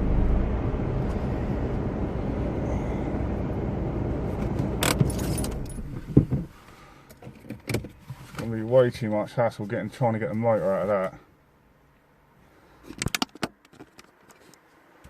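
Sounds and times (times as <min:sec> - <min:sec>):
car engine running: 0:00.0 - 0:06.7
keys jingling at ignition: 0:04.8 - 0:05.9.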